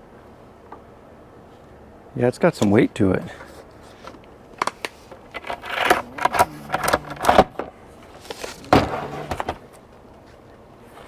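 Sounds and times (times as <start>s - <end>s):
clicks taps and rustles of handling: 3.9s - 9.6s.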